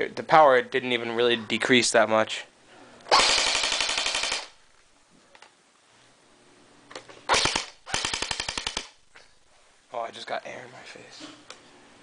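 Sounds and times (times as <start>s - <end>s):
airsoft gun firing full auto: 3.1s - 4.6s, 7.3s - 9.0s.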